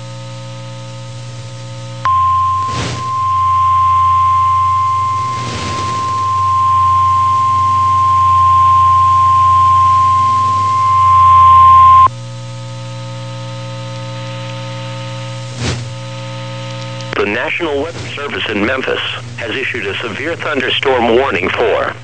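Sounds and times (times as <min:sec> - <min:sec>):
radio hiss and hum: 0:00.0 - 0:12.1, 0:13.4 - 0:22.0
steady warning alarm tone: 0:02.1 - 0:12.1.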